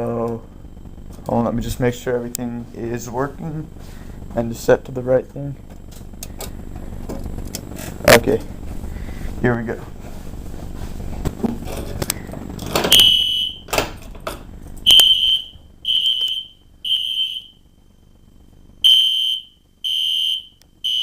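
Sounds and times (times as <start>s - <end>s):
fire alarm horn blasts: 12.9s - 13.8s, 14.8s - 18.0s, 18.8s - 21.0s.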